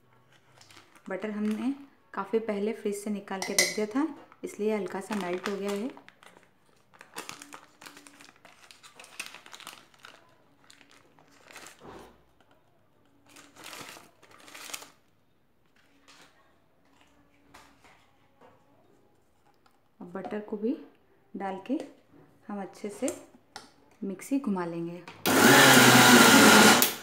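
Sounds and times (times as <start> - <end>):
paper wrapper crinkling: 0.2 - 1.8, 4.3 - 15.1.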